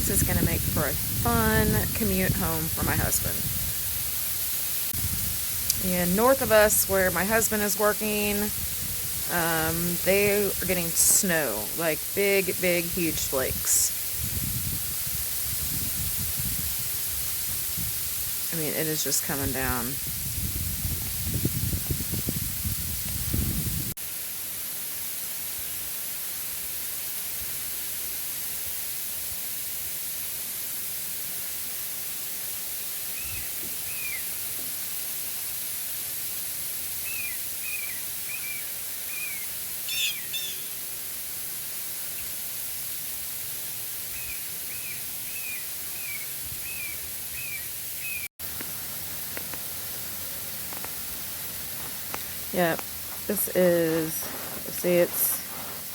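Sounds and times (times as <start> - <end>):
small bird chirping: 33.2 - 34.4, 37.0 - 40.8, 44.1 - 48.3
heavy sleet falling: 48.7 - 55.9.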